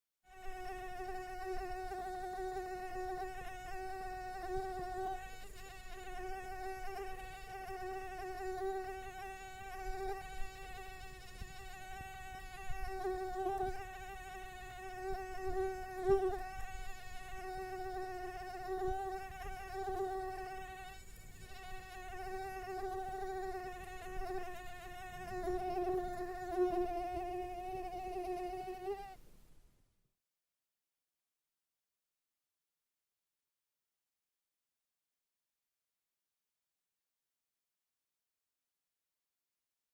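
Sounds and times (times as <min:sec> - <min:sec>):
mosquito buzzing: 0:00.3 - 0:29.2.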